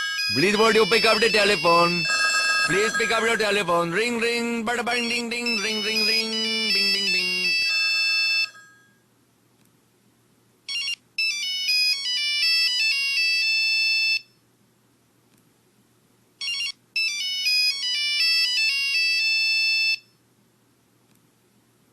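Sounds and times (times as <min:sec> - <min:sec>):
electronic phone ringtone: 0:00.0 - 0:03.9, 0:04.9 - 0:09.0, 0:10.7 - 0:14.3, 0:16.4 - 0:20.1.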